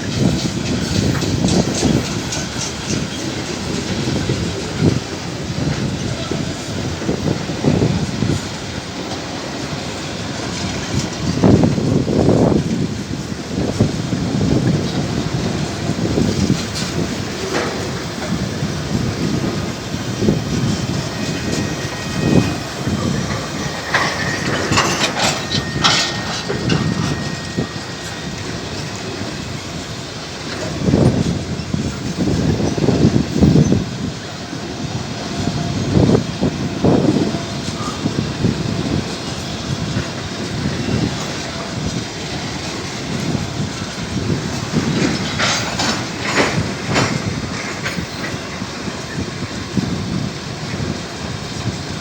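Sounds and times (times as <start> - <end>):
train wheels clattering: 0.0 - 52.0
thin high squeal: 18.8 - 30.4
sharp metallic clanks: 19.2 - 30.8
sharp metallic sounds: 19.3 - 30.2.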